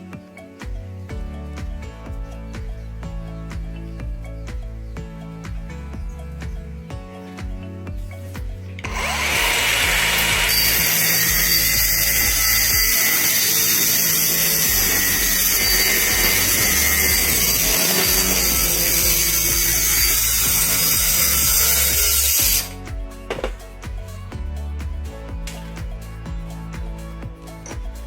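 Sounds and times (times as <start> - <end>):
background music: 0.0 - 28.0
power tool running: 8.8 - 22.8.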